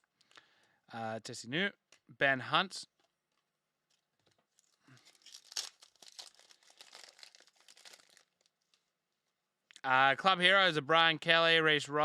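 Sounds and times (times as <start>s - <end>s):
foil wrapper crinkling and tearing: 3.9s - 8.8s.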